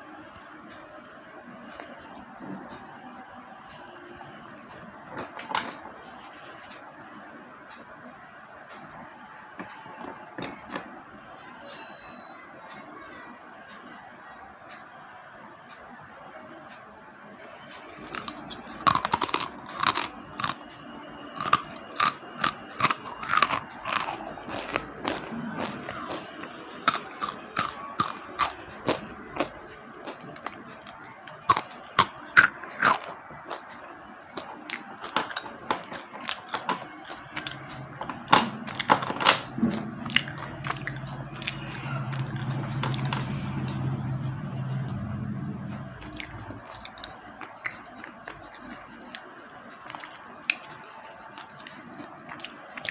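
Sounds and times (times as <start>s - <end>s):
slate pencils crunching: 18.0s - 20.7s, 21.4s - 33.7s, 34.4s - 43.4s
low steady hum: 35.1s - 49.1s.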